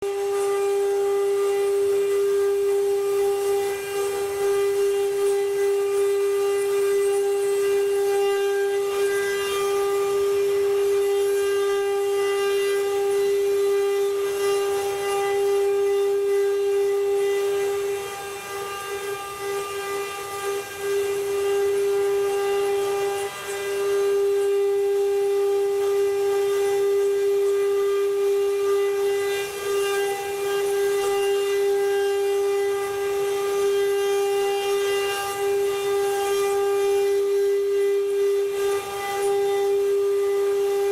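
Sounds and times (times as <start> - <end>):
router spindle motor whining: 0.0 - 40.9.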